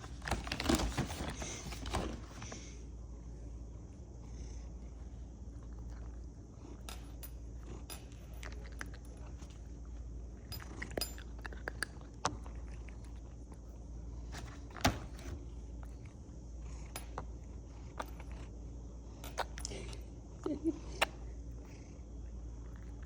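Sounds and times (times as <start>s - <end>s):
cat crunching dry treats: 5.7s - 9.8s, 10.4s - 13.6s.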